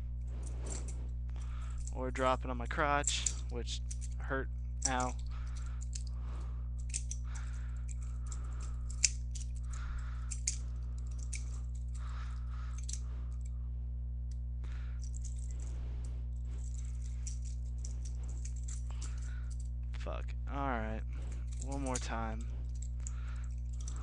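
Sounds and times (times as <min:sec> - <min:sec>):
steady low hum: 0:00.0 - 0:24.0
butterfly knife clicking: 0:08.6 - 0:09.5.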